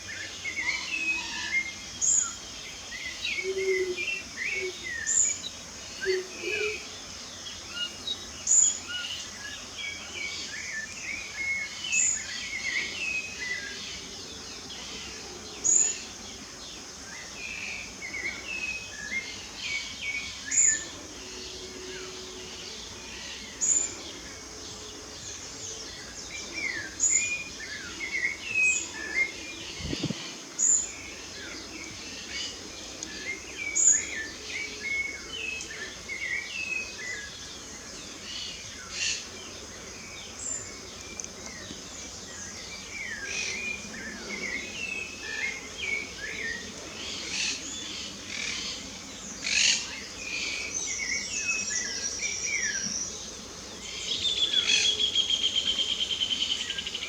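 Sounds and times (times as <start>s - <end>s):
songbirds chorus: 0.0s - 57.0s
steady background hiss: 0.0s - 57.0s.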